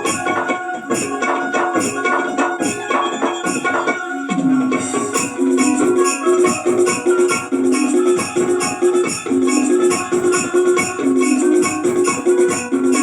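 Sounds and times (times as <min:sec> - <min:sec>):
shaker rhythm: 0:04.8 - 0:13.0.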